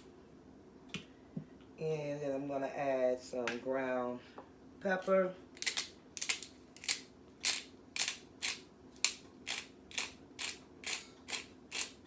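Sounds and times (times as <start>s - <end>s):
pepper mill grinding: 5.6s - 12.0s.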